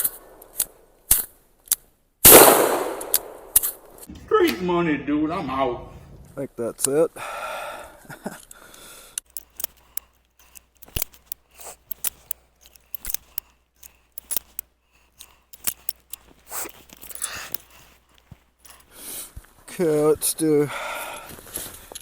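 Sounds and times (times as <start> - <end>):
revolver metallic clicks: 0.0 - 4.0.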